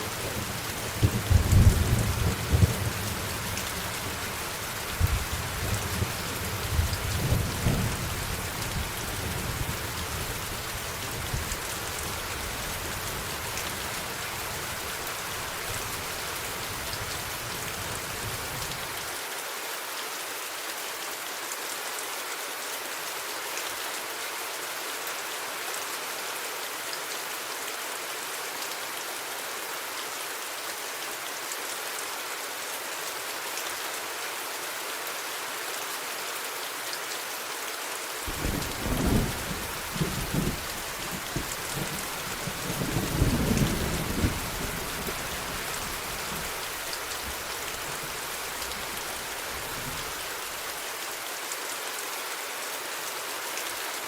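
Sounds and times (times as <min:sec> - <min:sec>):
steady rain falling: 0:00.0 - 0:54.0
thunder rumbling: 0:38.3 - 0:48.2.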